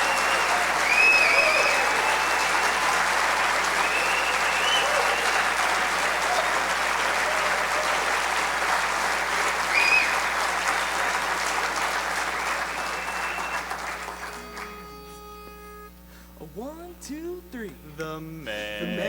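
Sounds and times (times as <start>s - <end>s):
audience applauding: 0.0s - 15.2s.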